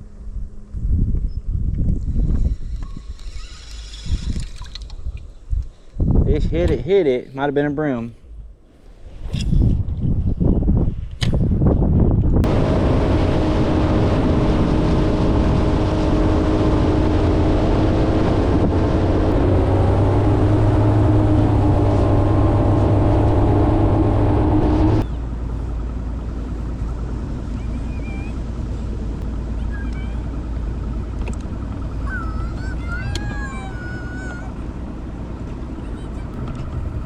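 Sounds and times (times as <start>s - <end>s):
boat motor running: 12.4s - 37.0s.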